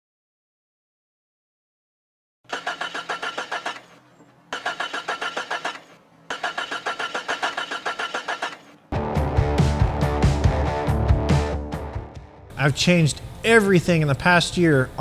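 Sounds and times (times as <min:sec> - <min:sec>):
engine cranking on starter: 0:02.5 - 0:08.9
guitar music: 0:08.9 - 0:14.2.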